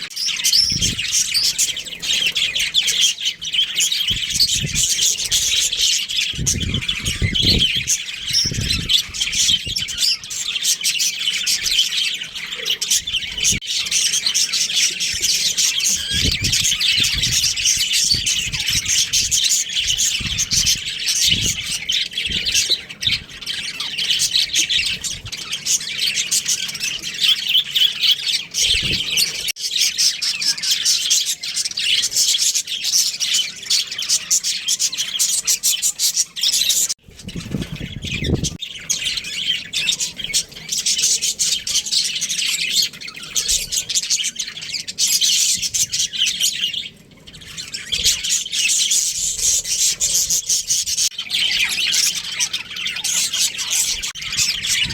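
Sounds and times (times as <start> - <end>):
budgerigars chattering and chirping: 0.0 - 54.9.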